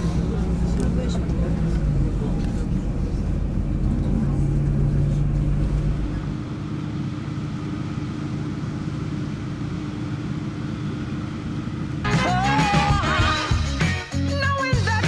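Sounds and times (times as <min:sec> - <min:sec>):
low mechanical hum and rumble: 0:00.0 - 0:13.5
upbeat music: 0:12.1 - 0:15.0.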